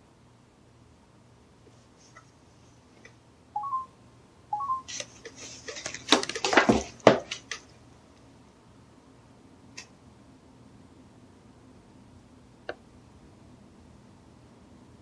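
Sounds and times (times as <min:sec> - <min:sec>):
camcorder two-note beep: 0:03.6 - 0:03.9, 0:04.5 - 0:04.9.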